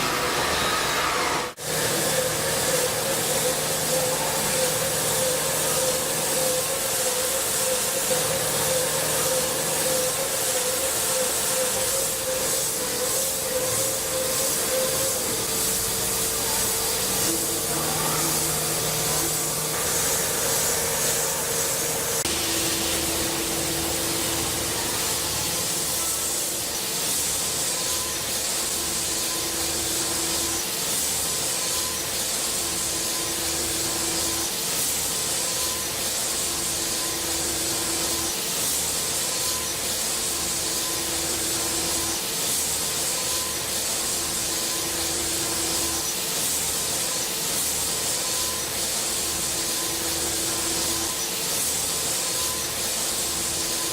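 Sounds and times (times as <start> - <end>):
low machine tone: 0.0 - 30.7
machine hiss: 0.0 - 53.9
machine whine: 0.0 - 53.9.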